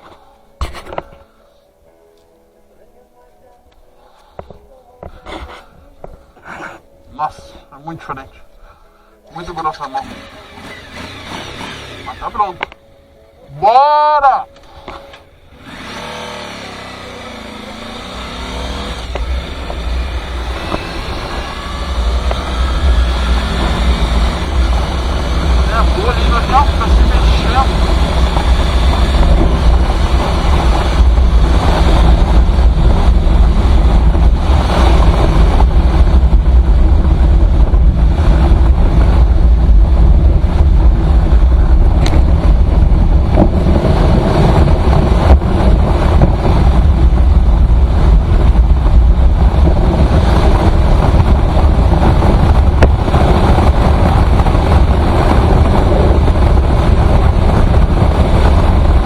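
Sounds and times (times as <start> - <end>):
motorcycle engine running: 10.0 - 12.5, 15.5 - 59.0
wind buffeting microphone: 17.3 - 59.0.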